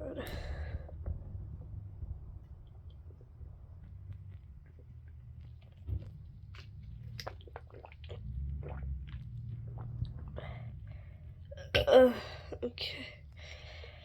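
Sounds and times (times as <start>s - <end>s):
stomach gurgling: 2.7s - 11.9s.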